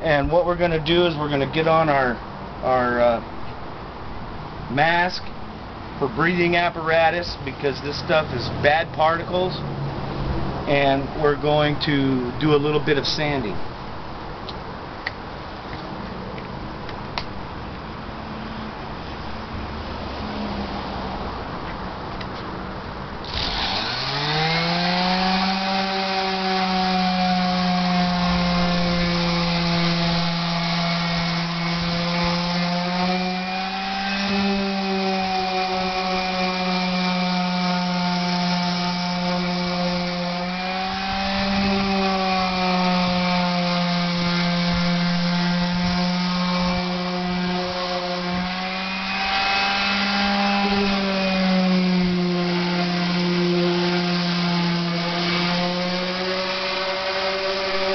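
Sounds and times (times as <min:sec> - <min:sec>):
power sander whining: 0:23.2 - 0:57.9.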